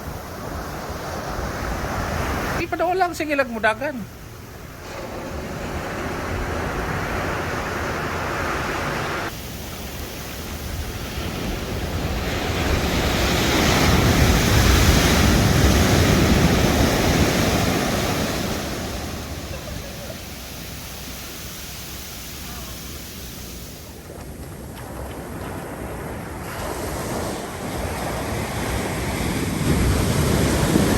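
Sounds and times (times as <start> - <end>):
ocean surf breaking: 0.0 - 30.9
wind rumble on microphone: 23.7 - 30.9.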